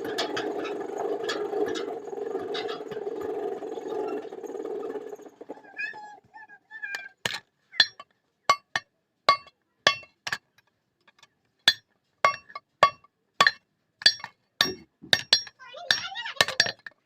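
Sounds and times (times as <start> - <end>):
hammer striking metal on anvil: 11.7 - 16.0.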